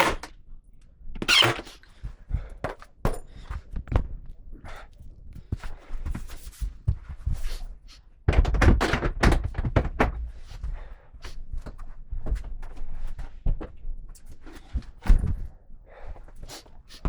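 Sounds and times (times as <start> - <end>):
wooden panels knocking and thudding: 8.2 - 10.5.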